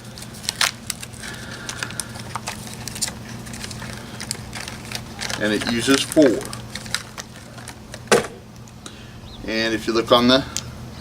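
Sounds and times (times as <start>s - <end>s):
steady low hum: 0.0s - 11.0s
batteries clicking and rattling: 0.1s - 8.1s.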